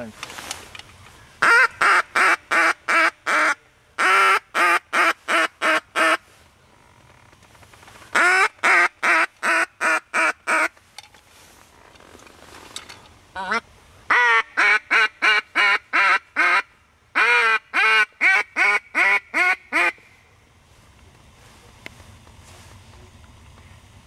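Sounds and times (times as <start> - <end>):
duck call quacks: 1.4 - 6.2, 8.1 - 10.7, 13.4 - 20.1.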